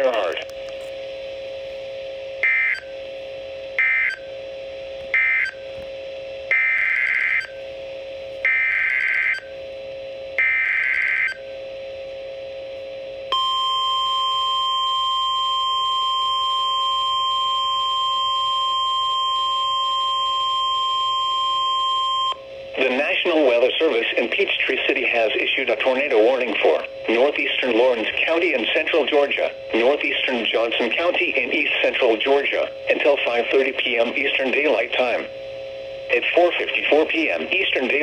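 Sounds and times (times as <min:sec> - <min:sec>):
steady hum: 0:00.0 - 0:38.0
warning alarm tone: 0:02.4 - 0:03.1, 0:03.7 - 0:04.5, 0:05.1 - 0:05.7, 0:06.5 - 0:07.7, 0:08.5 - 0:09.6, 0:10.4 - 0:11.5, 0:13.3 - 0:23.1.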